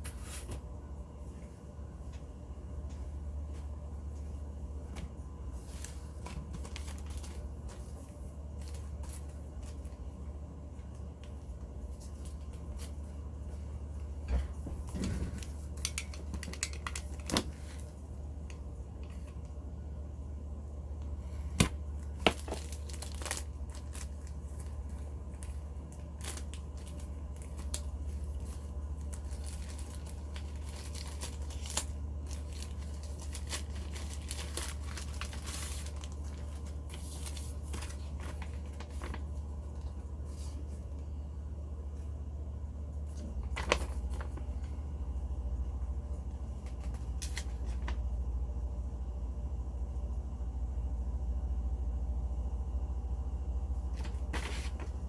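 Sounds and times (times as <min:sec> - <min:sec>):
steady low hum: 0:00.0 - 0:55.0
plastic packaging crinkling and tearing: 0:05.7 - 0:10.1, 0:15.3 - 0:18.0, 0:21.6 - 0:40.6, 0:43.1 - 0:44.7, 0:46.6 - 0:48.0.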